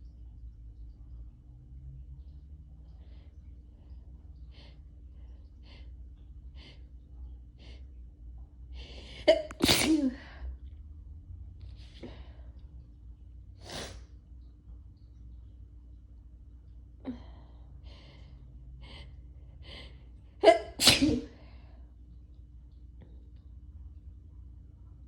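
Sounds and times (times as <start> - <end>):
person breathing: 8.8 - 9.3, 17.0 - 20.1
person sneezing: 9.2 - 10.3, 20.4 - 21.4.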